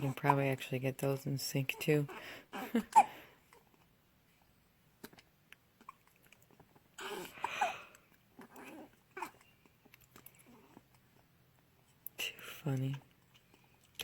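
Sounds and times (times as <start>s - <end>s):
baby hiccuping: 2.1s - 3.2s
breathy sound: 7.0s - 8.1s.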